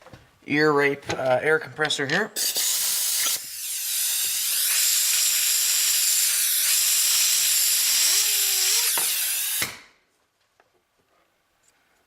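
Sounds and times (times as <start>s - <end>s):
compressed air hissing: 2.4s - 3.8s.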